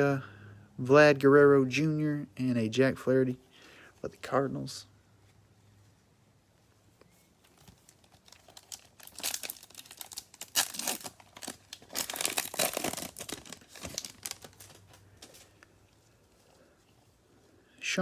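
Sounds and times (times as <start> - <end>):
wrapper tearing and crinkling: 7.4 - 15.5.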